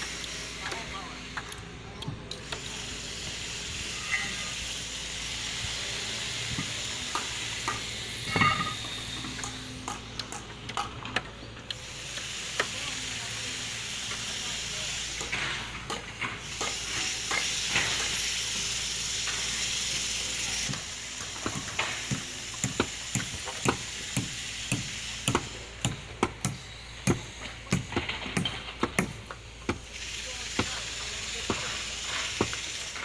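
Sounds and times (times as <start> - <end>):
steady hiss: 11.7 - 33.0.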